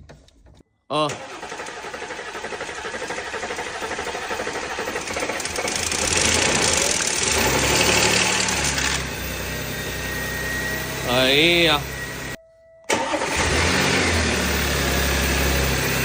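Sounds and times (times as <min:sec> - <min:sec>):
car engine clattering: 0:01.2 - 0:09.2.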